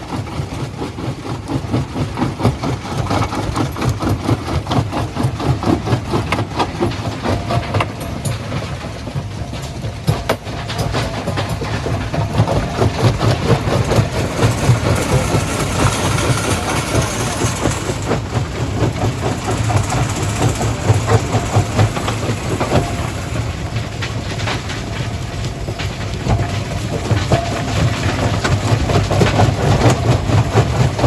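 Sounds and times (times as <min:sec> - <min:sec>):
rock crushing clatter: 0:00.1 - 0:31.0
low diesel engine drone: 0:10.7 - 0:31.0.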